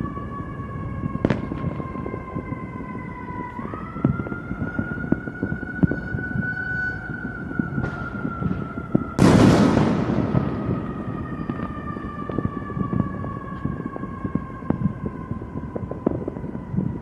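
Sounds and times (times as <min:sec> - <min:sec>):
firework pops and crackles: 0:01.0 - 0:02.8, 0:03.6 - 0:17.0
firework bang: 0:01.2 - 0:02.1, 0:07.8 - 0:13.9.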